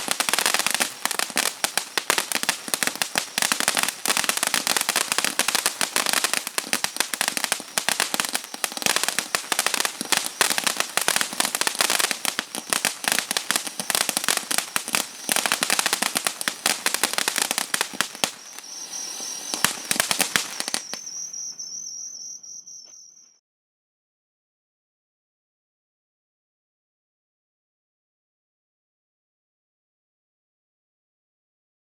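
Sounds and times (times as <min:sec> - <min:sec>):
firework fountain crackling: 0:00.0 - 0:21.6.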